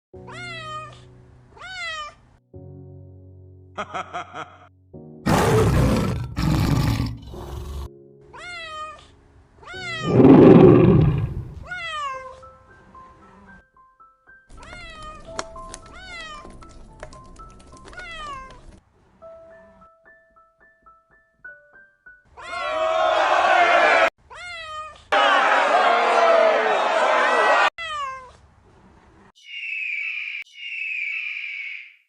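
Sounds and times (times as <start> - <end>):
background music with held notes: 2.4 - 5.3, 7.2 - 10.0, 11.8 - 18.1, 19.2 - 23.9.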